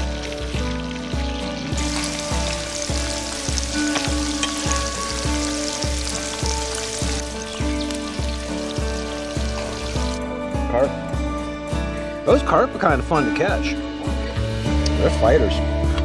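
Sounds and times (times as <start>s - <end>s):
fish sizzling in hot oil: 0.0s - 10.2s
background music with steady beat: 0.0s - 16.0s.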